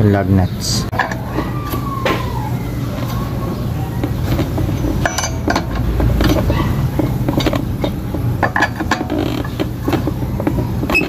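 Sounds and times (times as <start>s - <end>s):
steady low rumble: 2.6s - 10.9s
lug wrench clinking on nuts: 4.4s - 10.0s.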